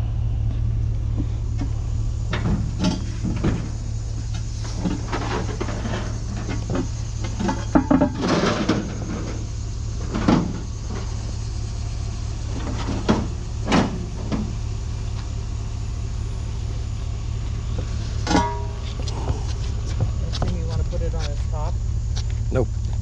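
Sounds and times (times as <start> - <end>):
vehicle engine running: 0.0 - 23.0
scrap metal clunking: 17.8 - 21.4.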